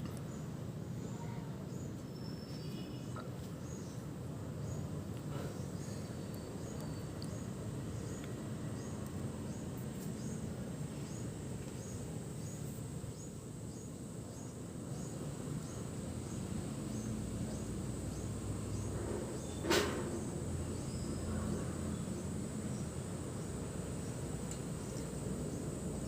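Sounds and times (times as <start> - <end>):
faint high chirp: 1.0 - 4.0, 5.6 - 8.2.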